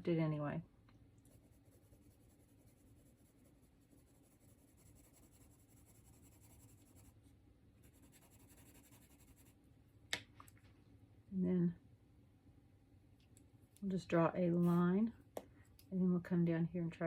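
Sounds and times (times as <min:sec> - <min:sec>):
pencil scratching on paper: 0:01.2 - 0:07.2, 0:07.8 - 0:09.5.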